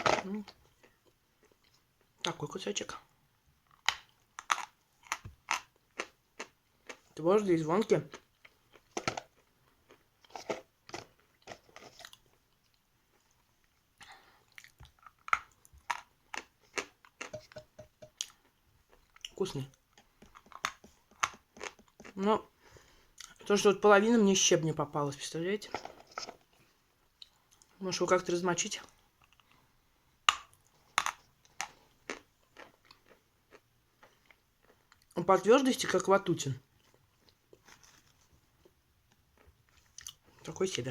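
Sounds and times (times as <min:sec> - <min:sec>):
crisp chewing crunches: 0:03.7 - 0:07.2, 0:07.8 - 0:17.3, 0:18.2 - 0:22.3, 0:36.8 - 0:40.4.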